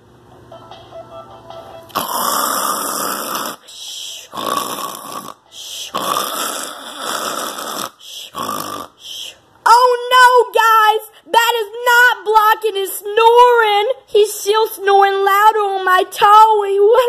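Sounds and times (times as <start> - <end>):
man snoring loudly: 1.9 - 3.7, 4.3 - 9.0.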